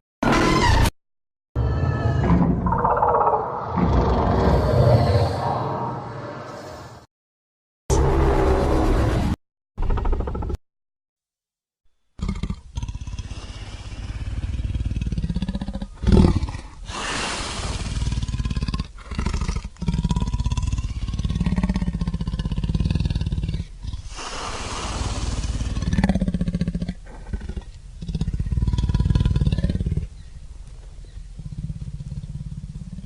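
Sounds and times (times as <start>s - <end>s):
deep creature roars and growls: 2.9s - 7.0s.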